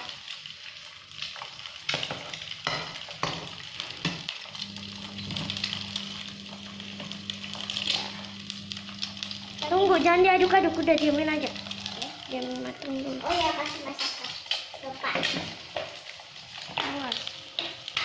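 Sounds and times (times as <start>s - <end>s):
egg sizzling in a pan: 0.0s - 18.0s
low steady hum: 4.6s - 12.0s.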